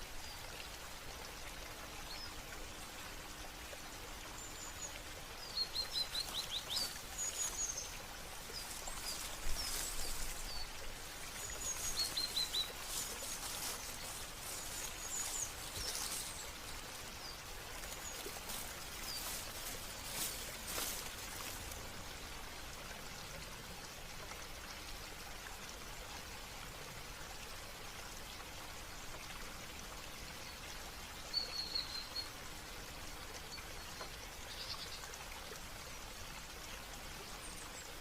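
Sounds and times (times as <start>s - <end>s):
running water hiss: 0.0s - 38.0s
songbirds chirping: 0.2s - 22.7s.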